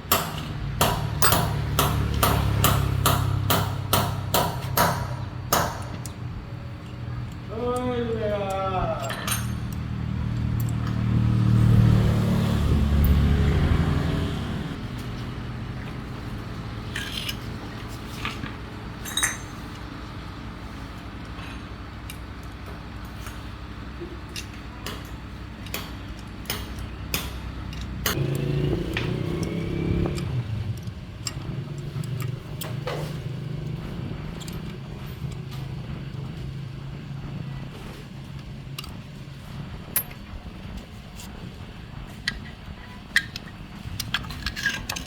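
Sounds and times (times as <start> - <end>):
engine humming: 0.0 - 45.0
light metallic clinks: 8.5 - 11.0, 19.0 - 19.8.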